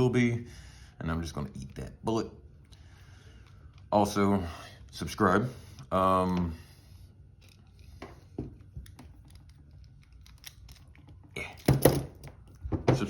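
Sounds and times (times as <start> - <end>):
metal tools clicking on padlock: 8.9 - 12.6.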